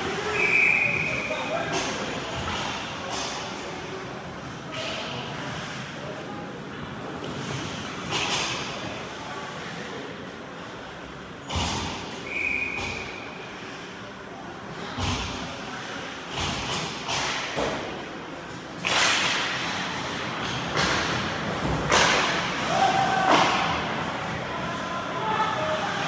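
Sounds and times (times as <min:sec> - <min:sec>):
puck and sticks knocking boards: 0:18.8 - 0:19.8, 0:20.4 - 0:22.6, 0:23.2 - 0:23.9.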